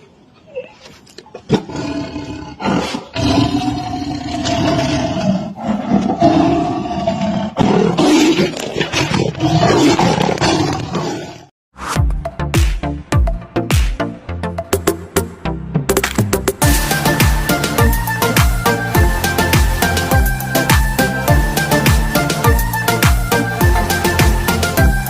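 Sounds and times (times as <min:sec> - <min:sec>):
big cat roaring: 0:01.4 - 0:11.5.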